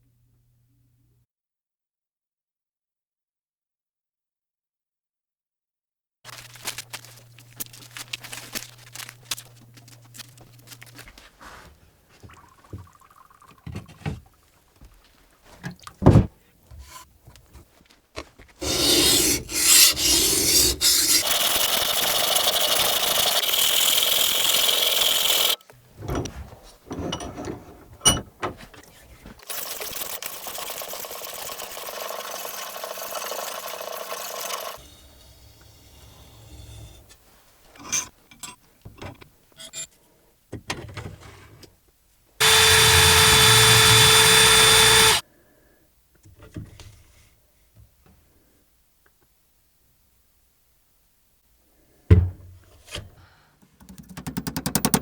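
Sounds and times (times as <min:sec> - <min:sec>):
grinding on a blade: 0:18.6 - 0:25.6, 0:42.4 - 0:45.2
taps and knocks: 0:53.8 - 0:55.0.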